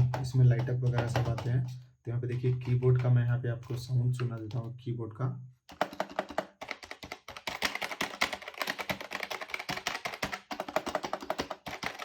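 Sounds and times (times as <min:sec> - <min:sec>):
fast typing on keyboard: 0:00.0 - 0:01.7, 0:05.7 - 0:12.0.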